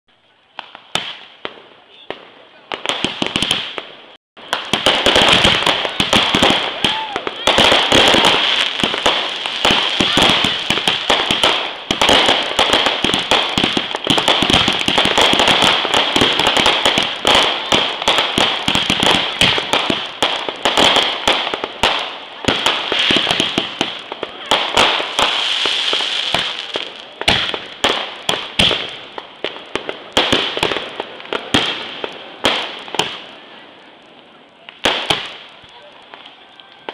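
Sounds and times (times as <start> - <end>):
firecracker pops crackling: 0.4 - 36.9
steady hiss: 22.8 - 36.2.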